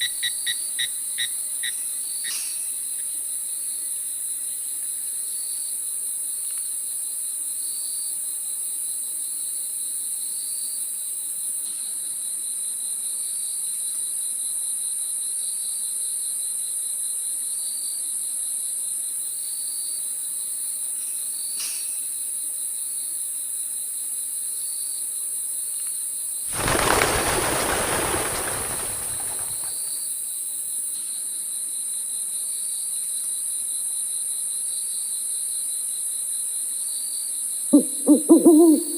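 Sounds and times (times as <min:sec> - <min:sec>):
crickets chorus: 0:00.0 - 0:38.9
loud rush of noise: 0:26.5 - 0:29.7.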